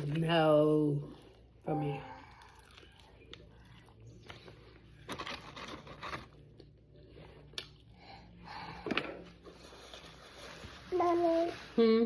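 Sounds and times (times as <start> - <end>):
chewing and crunching fried food: 1.0 - 7.9.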